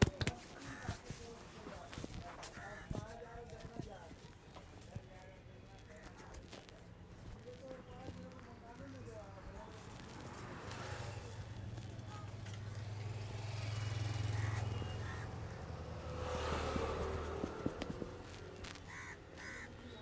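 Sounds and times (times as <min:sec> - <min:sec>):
vehicle passing by: 0:10.3 - 0:18.7.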